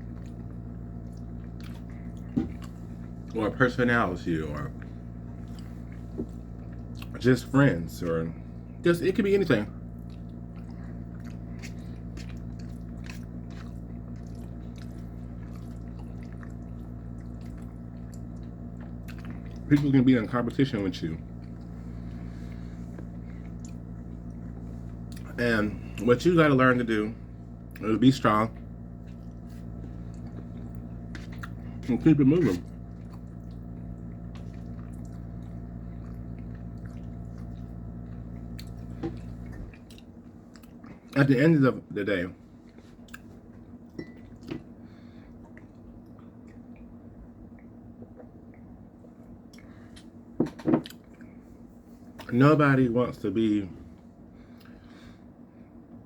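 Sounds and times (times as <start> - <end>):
person chewing food: 0.0 - 3.4, 4.7 - 7.2, 9.8 - 19.8, 21.2 - 26.0, 28.6 - 41.2, 42.7 - 52.3, 54.4 - 55.0
steady low hum: 0.0 - 56.0.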